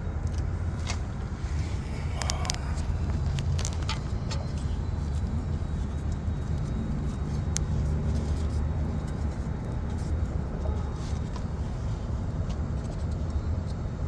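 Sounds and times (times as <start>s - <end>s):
low rumble: 0.0s - 7.0s.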